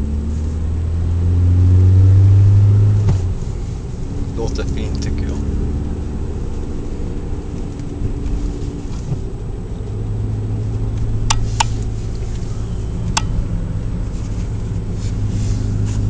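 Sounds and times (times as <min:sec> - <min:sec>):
car engine and road drone: 0:00.0 - 0:16.0
sharp clicks: 0:11.0 - 0:11.9, 0:13.1 - 0:13.5.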